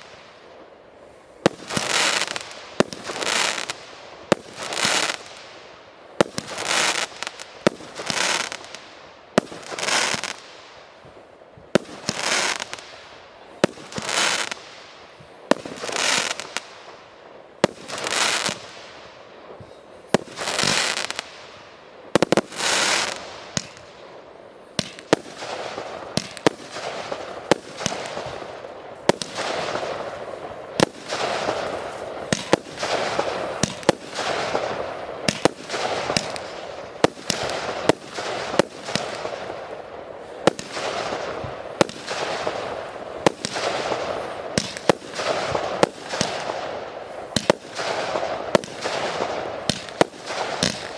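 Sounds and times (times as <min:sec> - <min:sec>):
firework hissing crackle: 0:00.0 - 0:50.9
firework bangs: 0:01.4 - 0:24.0, 0:24.8 - 0:50.9.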